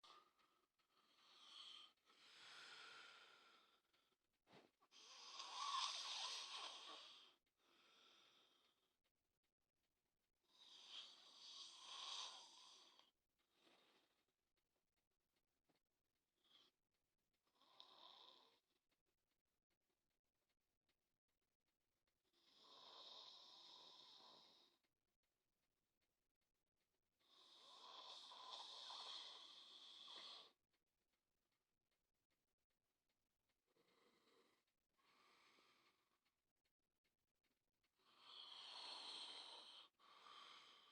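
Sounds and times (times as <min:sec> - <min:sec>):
person snoring: 0:04.9 - 0:08.6, 0:10.5 - 0:13.1, 0:22.4 - 0:24.8, 0:27.2 - 0:30.6, 0:38.0 - 0:40.9.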